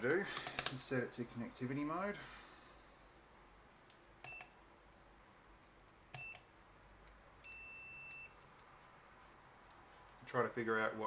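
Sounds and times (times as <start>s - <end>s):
multimeter beeps: 4.2s - 4.6s, 6.2s - 6.5s, 7.4s - 8.4s.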